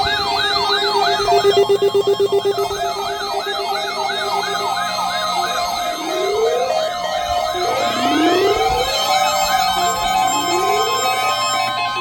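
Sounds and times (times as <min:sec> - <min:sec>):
electronic siren tones sweeping: 0:00.0 - 0:11.8
steady tones: 0:01.0 - 0:05.0.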